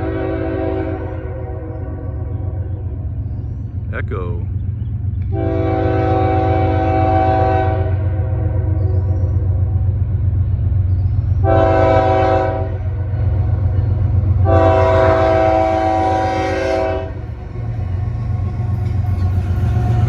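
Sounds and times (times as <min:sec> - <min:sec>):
locomotive air horn blasts: 0:00.0 - 0:02.1, 0:05.3 - 0:08.8, 0:11.4 - 0:12.8, 0:14.4 - 0:17.3
freight train rumbling: 0:00.0 - 0:20.0.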